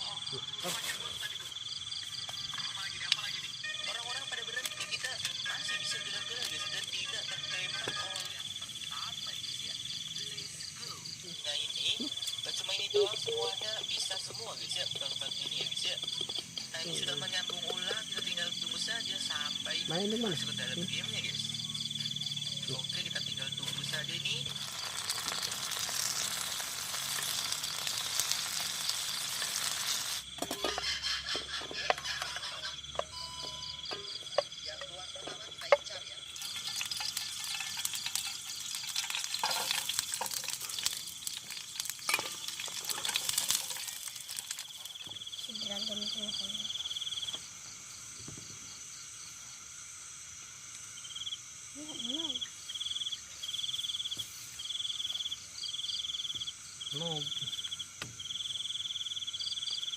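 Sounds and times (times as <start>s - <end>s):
faint insect chirring: 0.0s - 59.9s
heavy rain hissing: 22.7s - 30.3s.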